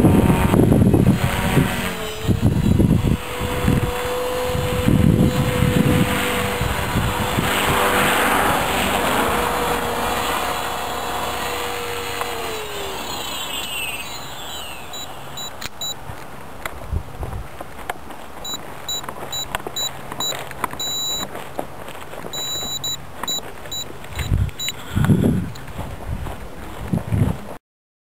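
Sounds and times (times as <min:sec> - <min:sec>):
wind buffeting microphone: 0:00.0 - 0:12.9, 0:15.8 - 0:17.6, 0:24.0 - 0:27.6
motor whining: 0:00.0 - 0:16.0, 0:18.5 - 0:21.3, 0:22.3 - 0:25.7.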